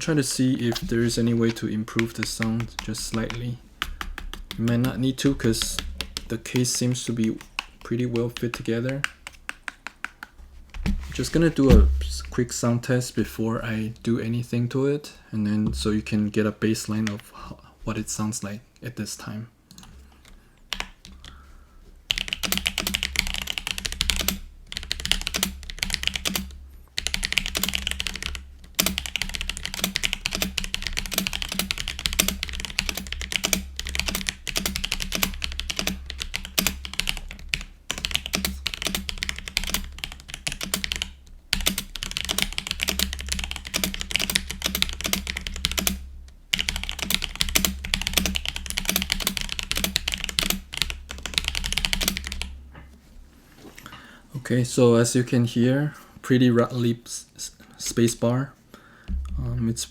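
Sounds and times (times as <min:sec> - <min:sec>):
mechanical keyboard typing: 0:00.0 - 0:10.2, 0:22.1 - 0:52.5.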